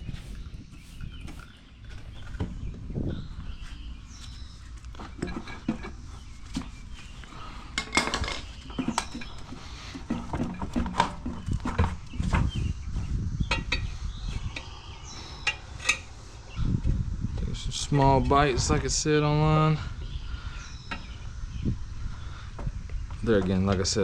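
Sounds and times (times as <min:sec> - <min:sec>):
tire irons clinking on wheel rim: 0:03.5 - 0:16.2.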